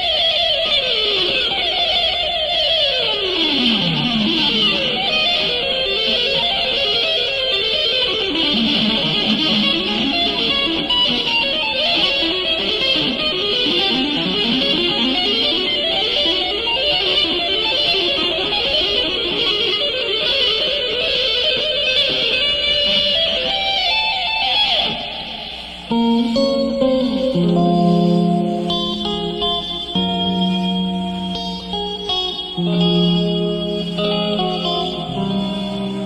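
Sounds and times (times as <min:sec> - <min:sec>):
backing music: 0:24.8 - 0:36.0.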